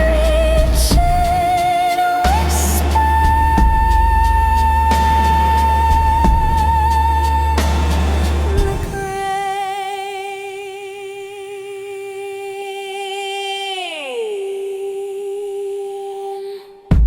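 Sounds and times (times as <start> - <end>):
loud music with deep bass: 0.0 - 9.2.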